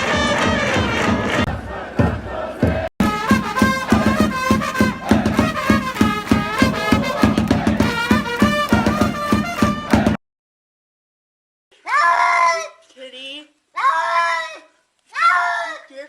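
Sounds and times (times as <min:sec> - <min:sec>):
upbeat meme music: 0:00.0 - 0:10.2.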